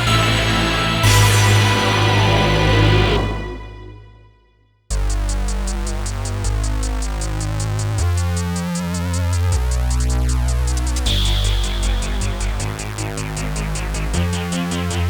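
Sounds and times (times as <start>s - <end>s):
drum machine beat: 0.0s - 2.7s, 4.9s - 15.0s
high sustained synth tone: 0.0s - 7.8s, 11.1s - 15.0s
bass line: 0.0s - 15.0s
synthesizer: 0.0s - 15.0s
hi-hat ticks: 4.9s - 15.0s.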